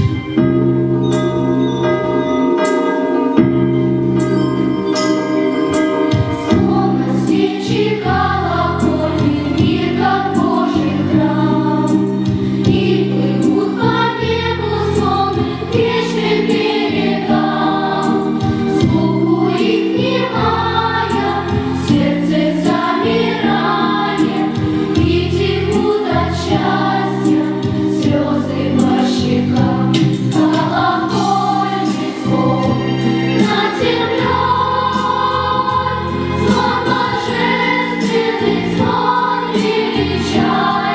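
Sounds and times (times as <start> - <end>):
church choir singing: 0.0 - 40.9.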